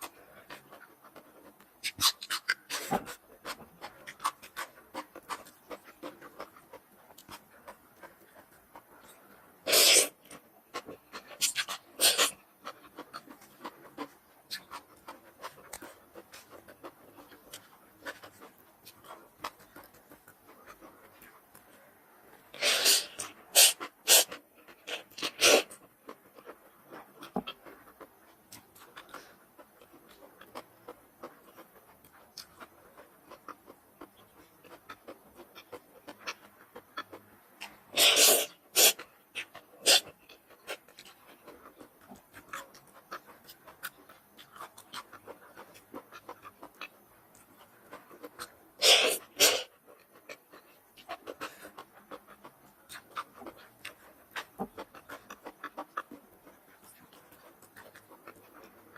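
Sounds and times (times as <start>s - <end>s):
chewing clicks: 10.2s - 22.5s, 23.2s - 58.9s
short breathy bursts: 48.8s - 49.7s.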